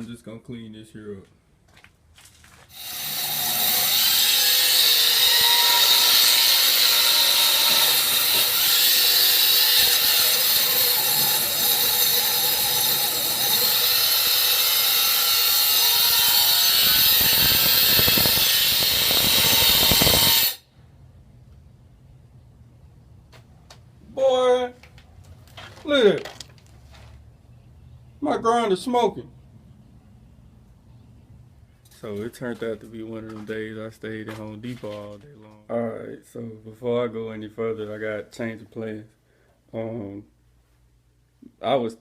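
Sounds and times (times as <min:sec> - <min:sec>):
wire wheel grinder scraping metal: 0:02.7 - 0:20.6.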